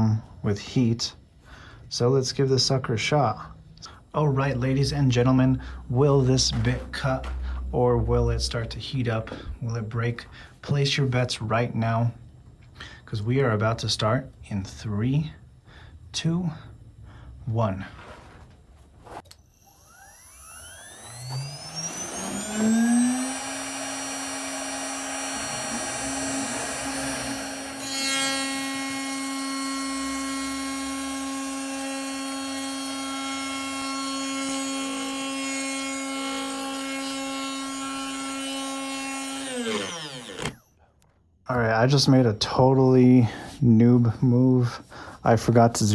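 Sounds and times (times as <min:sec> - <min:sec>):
cnc spindle whine: 0:19.3 - 0:29.4
rushing machine noise: 0:19.7 - 0:29.1.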